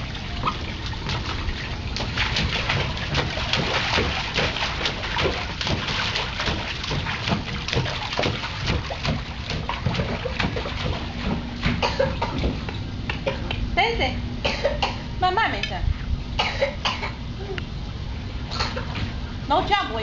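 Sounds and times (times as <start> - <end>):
water splashing: 0.0 - 12.9.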